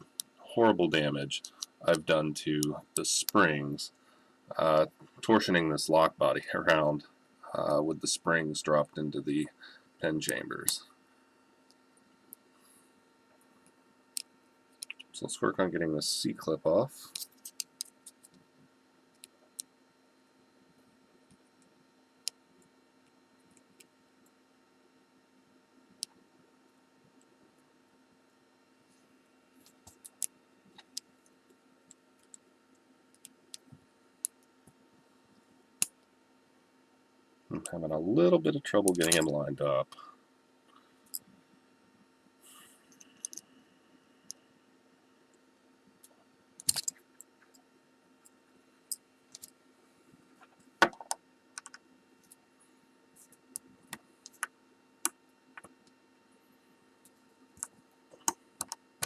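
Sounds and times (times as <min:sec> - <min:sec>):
tool clicking against metal clip: 0:46.6 - 0:47.0.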